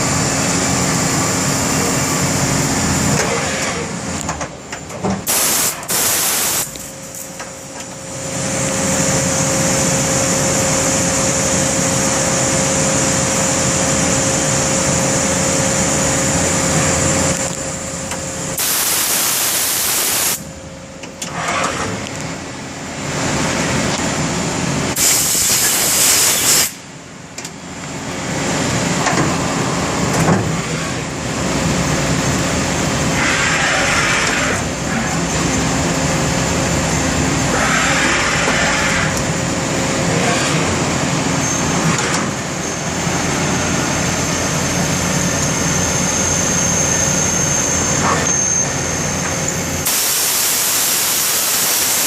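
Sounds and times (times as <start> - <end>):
loud hissing bursts: 5.3 - 6.9, 18.6 - 20.4, 25.0 - 26.8, 49.8 - 52.0
lathe whining: 31.0 - 52.0.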